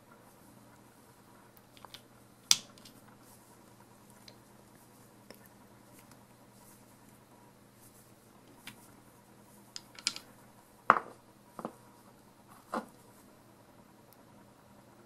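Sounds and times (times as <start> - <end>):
small hard parts clicking: 9.8 - 10.3.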